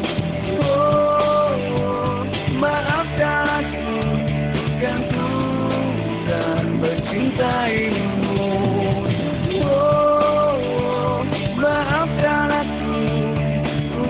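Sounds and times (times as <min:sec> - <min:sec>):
pop-rock ballad with guitar lead: 0:00.0 - 0:14.0.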